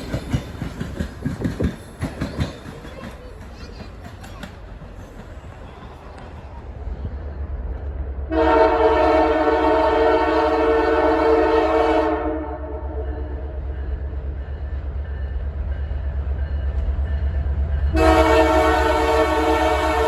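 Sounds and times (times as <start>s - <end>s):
diesel locomotive horn: 8.2s - 13.8s, 17.9s - 20.0s.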